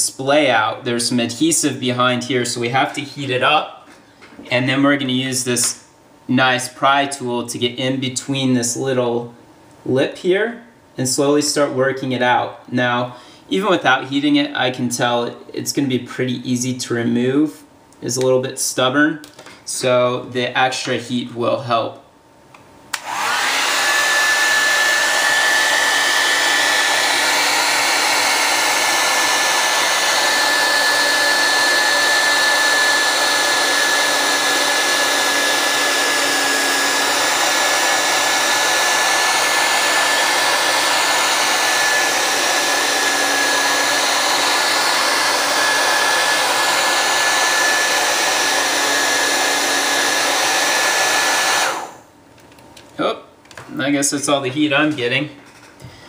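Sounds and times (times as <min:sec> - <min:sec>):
blow dryer running: 0:22.9 - 0:52.1.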